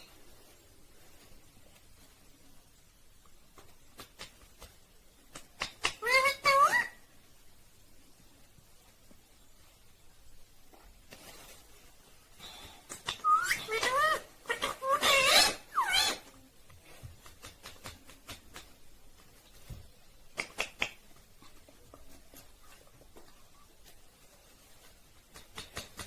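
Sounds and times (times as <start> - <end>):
parrot whistling and calling: 13.1 - 16.3.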